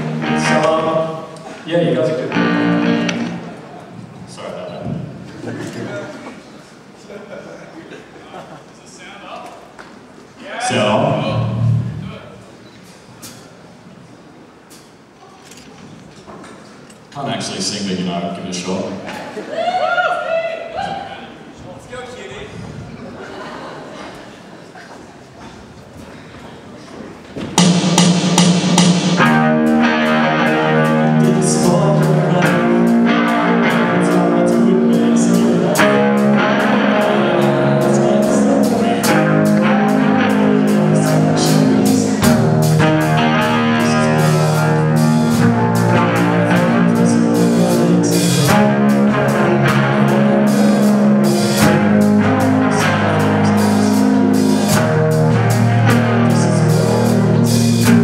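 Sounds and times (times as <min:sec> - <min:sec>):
loud rock music: 0:00.0 - 0:01.4, 0:02.1 - 0:03.6, 0:27.6 - 0:58.0.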